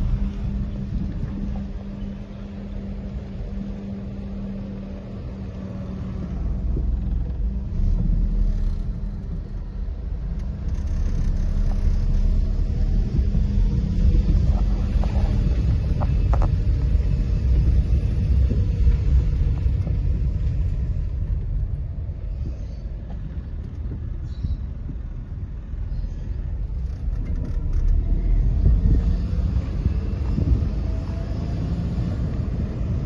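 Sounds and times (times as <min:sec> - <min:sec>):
steady low rumble: 0:00.0 - 0:33.0.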